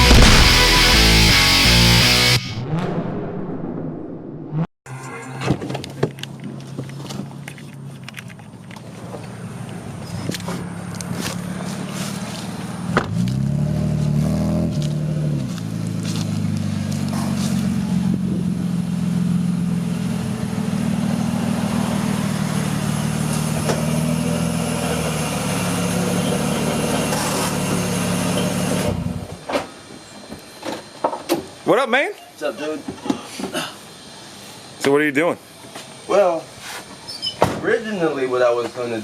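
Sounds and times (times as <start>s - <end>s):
car engine running: 0.0s - 2.4s.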